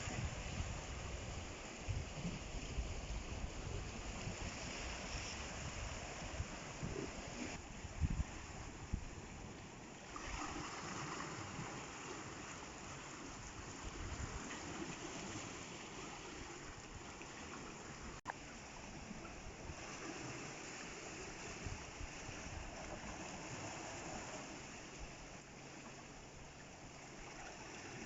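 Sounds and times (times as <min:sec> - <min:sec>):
wind gusts on microphone: 0:00.0 - 0:09.5, 0:10.2 - 0:17.2, 0:19.3 - 0:24.3
sea water trickling over rocks: 0:00.0 - 0:28.0
surf washing: 0:00.0 - 0:28.0.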